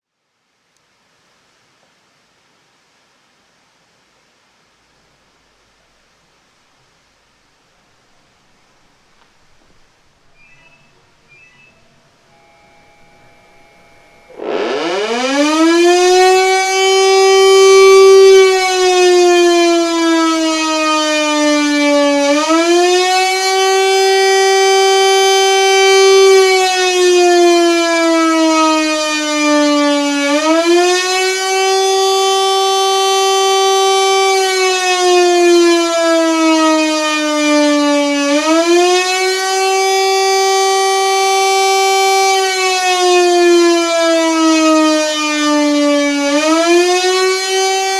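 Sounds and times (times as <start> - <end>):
air raid siren wailing: 7.9 - 47.9.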